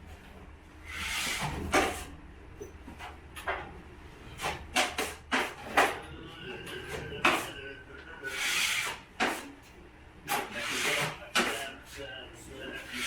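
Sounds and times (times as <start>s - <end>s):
taping knife scraping mud pan: 8.3s - 9.5s, 10.4s - 11.6s.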